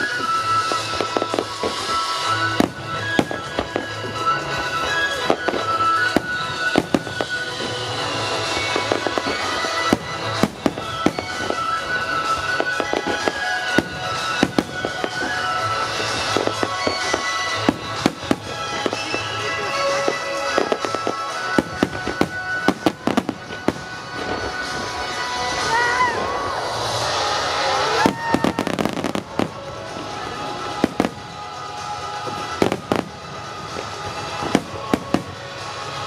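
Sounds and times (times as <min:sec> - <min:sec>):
fireworks bursting and crackling: 0:00.0 - 0:36.0
music: 0:00.0 - 0:36.0.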